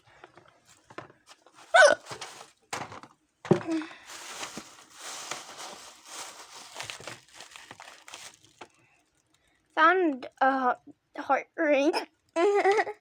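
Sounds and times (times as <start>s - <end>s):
rustling and clattering of small items: 0.0s - 10.6s
girl hiccupping: 1.7s - 2.1s.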